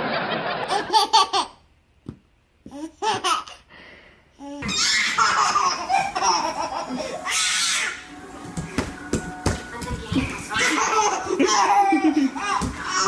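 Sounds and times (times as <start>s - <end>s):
laughter: 0.0s - 1.2s, 10.6s - 12.4s.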